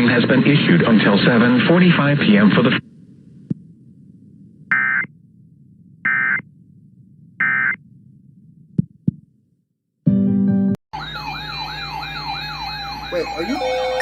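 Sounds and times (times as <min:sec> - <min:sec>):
warbling digital data tones: 0:11.0 - 0:14.0.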